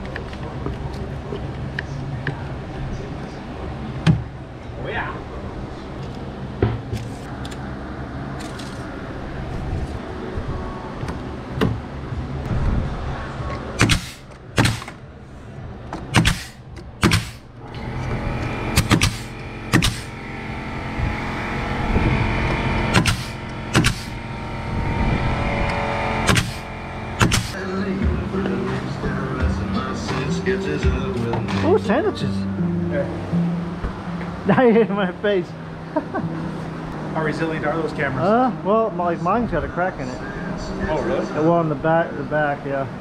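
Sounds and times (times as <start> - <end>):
steady low hum: 0.0 - 38.2
nail gun firing into wood: 13.8 - 15.0, 16.1 - 17.4, 18.7 - 20.1, 22.9 - 24.2, 26.2 - 27.6.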